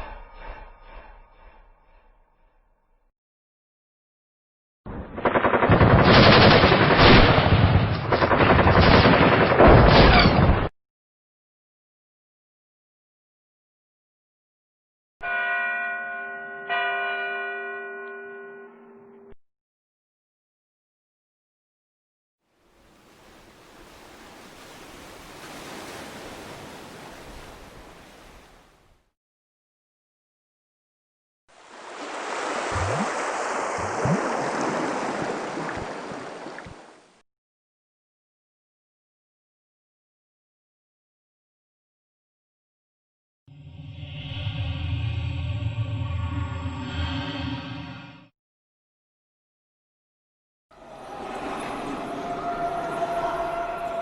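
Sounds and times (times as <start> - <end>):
machine-gun fire: 4.9 - 10.0.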